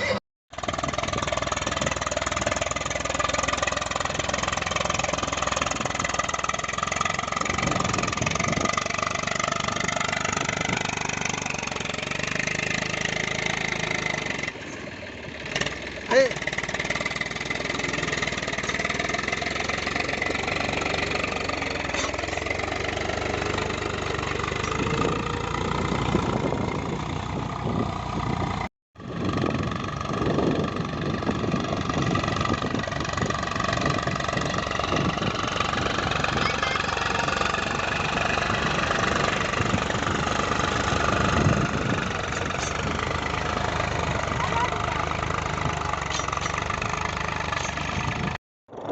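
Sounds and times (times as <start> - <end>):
tractor diesel engine running: 0.0 - 48.9.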